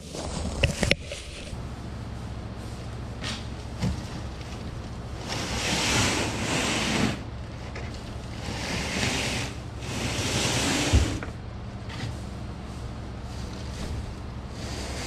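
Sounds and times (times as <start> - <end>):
truck road drone: 1.2 - 15.0
rushing air: 5.0 - 7.4.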